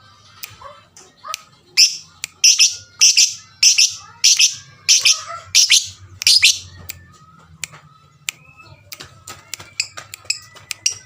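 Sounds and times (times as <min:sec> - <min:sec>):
lovebird shrill chirps: 0:01.8 - 0:06.7.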